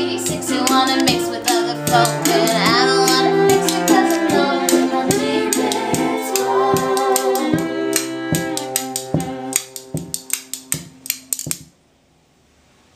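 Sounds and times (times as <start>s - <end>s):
voices singing chord: 0.0s - 10.4s
cello: 0.0s - 10.9s
violin: 0.0s - 11.6s
hand percussion taps: 0.0s - 11.7s.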